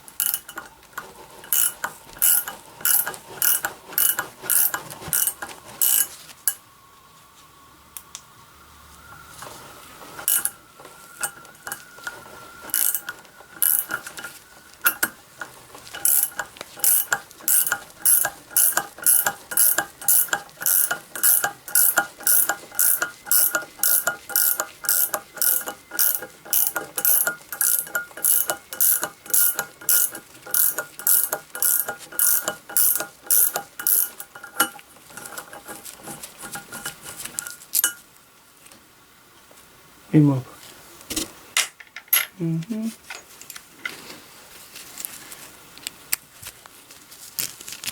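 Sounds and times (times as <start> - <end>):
ratchet wrench clicking: 0.0 - 6.6, 10.2 - 10.6, 11.2 - 11.8, 12.7 - 38.0.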